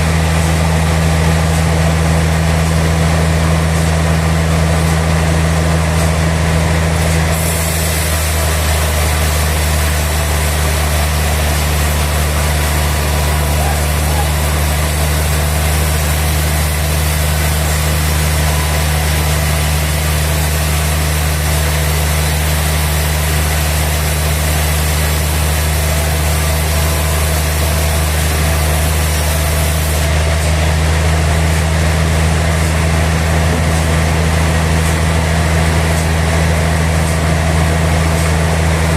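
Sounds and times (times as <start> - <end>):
sawmill machinery humming: 0.0 - 38.9
bright hiss: 7.3 - 30.1.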